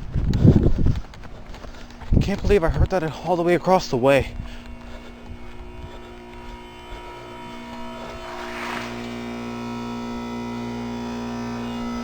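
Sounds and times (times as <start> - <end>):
heat pump compressor hum: 3.1 - 12.0
brief hiss: 8.1 - 9.2.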